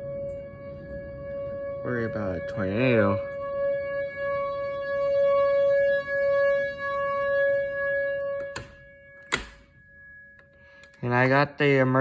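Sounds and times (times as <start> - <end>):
tornado warning siren: 0.0 - 12.0
sharp clicks: 8.4 - 9.6.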